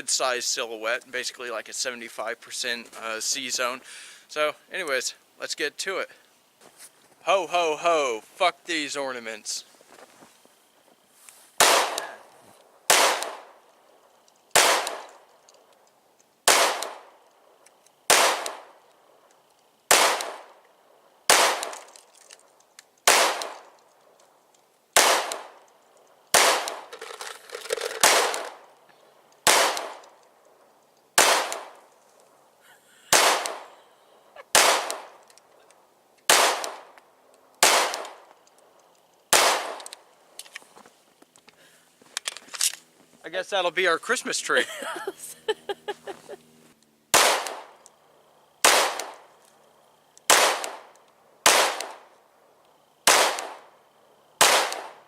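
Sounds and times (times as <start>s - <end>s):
pistol shots echoing: 11.6s - 12.2s, 12.9s - 13.6s, 14.5s - 15.2s, 16.4s - 17.1s, 18.1s - 18.8s, 19.9s - 20.6s, 21.3s - 21.8s, 23.0s - 23.6s, 25.0s - 25.6s, 26.3s - 26.9s, 28.0s - 28.6s, 29.4s - 30.1s, 31.2s - 31.8s, 33.1s - 33.7s, 34.5s - 35.2s, 36.3s - 36.9s, 37.6s - 38.3s, 39.3s - 39.9s, 47.1s - 47.8s, 48.6s - 49.3s, 50.3s - 52.1s, 53.0s - 53.7s, 54.4s - 55.0s.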